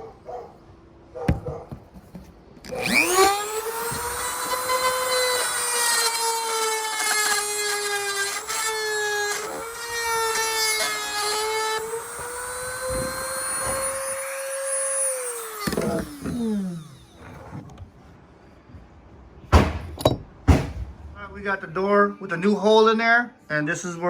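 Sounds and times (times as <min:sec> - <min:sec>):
rotary tool grinding wood: 0:02.6 - 0:17.7
sharp knocks: 0:19.5 - 0:21.0.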